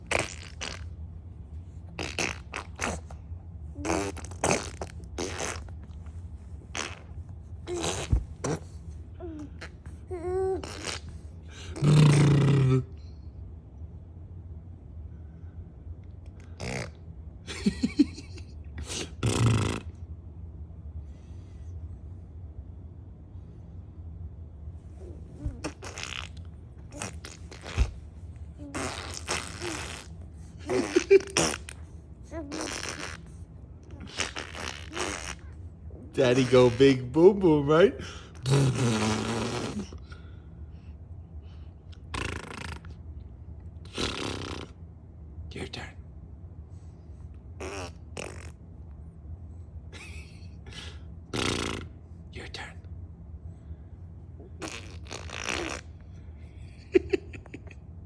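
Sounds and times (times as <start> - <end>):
breathy raspy mouth noises: 3.8 - 5.8, 7.7 - 12.9, 16.4 - 17.0, 18.8 - 20.0, 25.0 - 28.0, 28.6 - 37.3, 38.0 - 40.3, 41.9 - 43.0, 43.9 - 44.8, 47.6 - 48.6, 50.7 - 52.0, 54.5 - 56.0
popping grunts: 7.7 - 11.2, 25.4 - 28.0.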